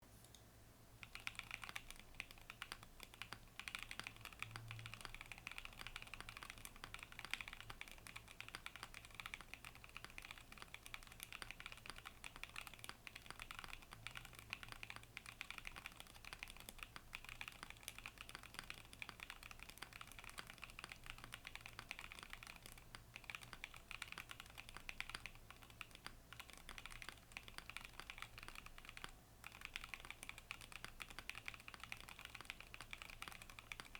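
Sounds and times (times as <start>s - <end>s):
fast typing on mechanical keyboard: 1.0s - 33.9s.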